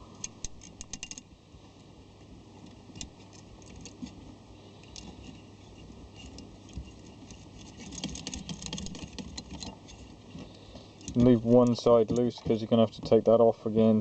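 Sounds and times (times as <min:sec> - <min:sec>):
faint metallic clicks and taps: 0:06.1 - 0:13.4.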